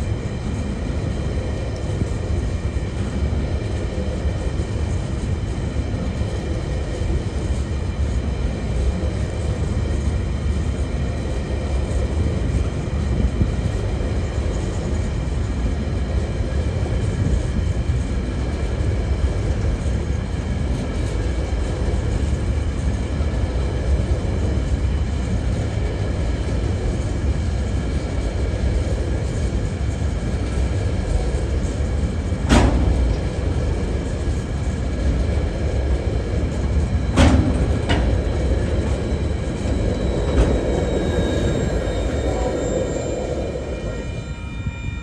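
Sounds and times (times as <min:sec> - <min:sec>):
freight train rumbling: 0:00.0 - 0:45.0
high ringing tones: 0:38.2 - 0:45.0.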